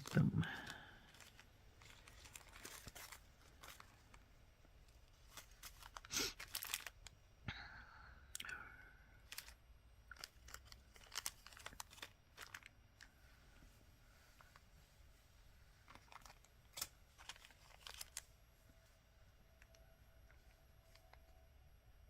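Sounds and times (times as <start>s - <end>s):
plastic bags crinkling: 0.0s - 7.2s, 9.2s - 13.2s, 15.8s - 18.4s.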